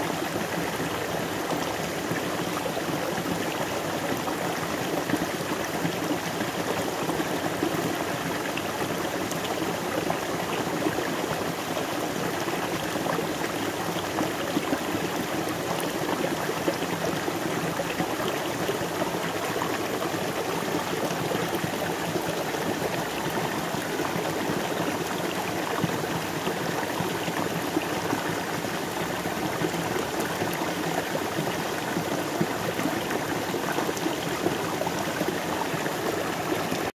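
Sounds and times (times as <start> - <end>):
river water flowing over stones: 0.0 - 36.9.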